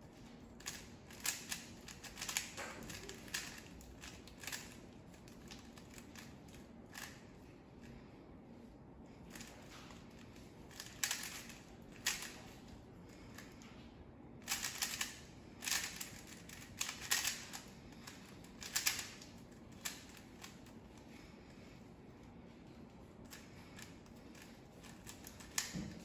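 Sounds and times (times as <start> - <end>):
puzzle cube plastic clicking: 0.6 - 6.3, 14.5 - 20.6.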